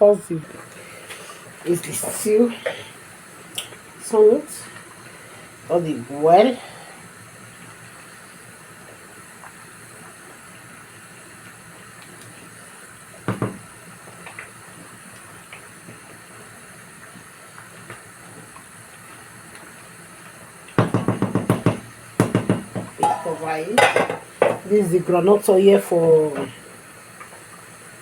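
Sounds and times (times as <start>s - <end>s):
stew bubbling in a pot: 0.0s - 28.0s
pot and lid clattering: 20.9s - 24.6s.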